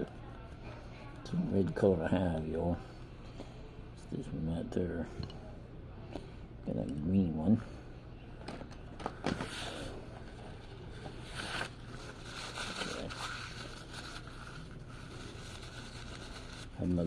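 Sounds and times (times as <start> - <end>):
soft rustling and scraping: 7.1 - 17.0.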